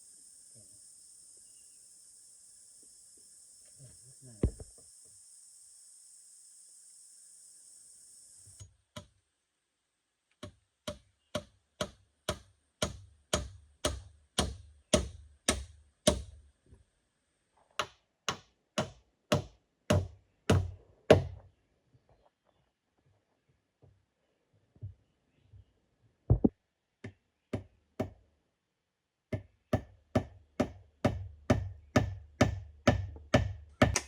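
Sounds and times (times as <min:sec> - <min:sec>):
insect buzzing: 0:00.0 - 0:08.6
knocking blows on wood: 0:04.4 - 0:04.8, 0:26.3 - 0:26.5.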